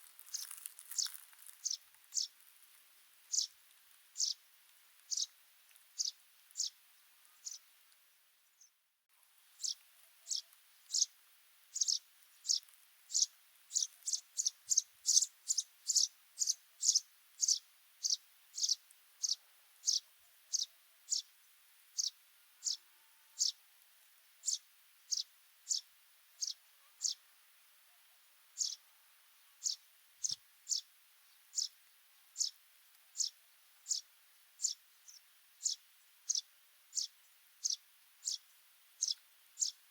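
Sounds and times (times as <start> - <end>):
sparrow chirping: 0.2 - 2.4, 3.3 - 3.6, 4.2 - 4.4, 5.1 - 5.4, 6.0 - 7.7, 9.6 - 22.8, 23.4 - 23.6, 24.4 - 27.2, 28.6 - 28.9, 29.5 - 31.8, 32.4 - 32.6, 33.2 - 39.9.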